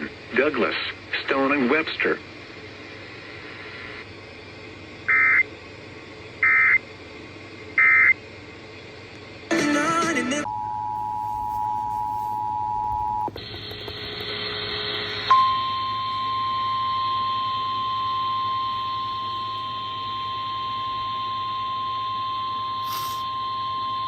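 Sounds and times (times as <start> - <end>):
radio hiss: 0.0 - 4.2, 22.8 - 23.3
steady warning alarm tone: 10.4 - 24.0
two-tone attention signal: 10.5 - 24.0.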